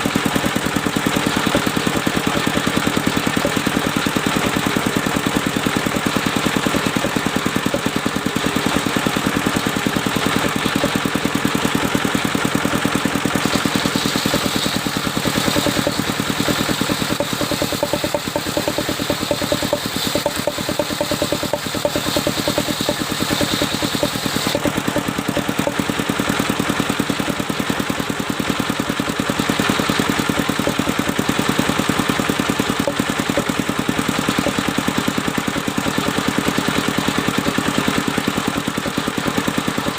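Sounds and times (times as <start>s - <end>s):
sawmill engine running: 0.0s - 39.9s
saw blade cutting wood: 0.4s - 9.7s, 10.3s - 26.1s, 32.6s - 35.0s.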